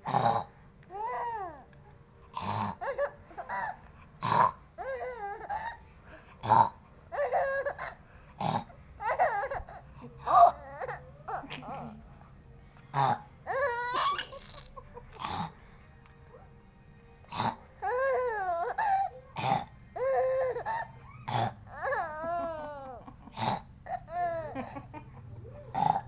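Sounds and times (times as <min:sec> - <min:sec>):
baby laughing and squealing: 0:13.5 - 0:14.8, 0:20.0 - 0:23.1.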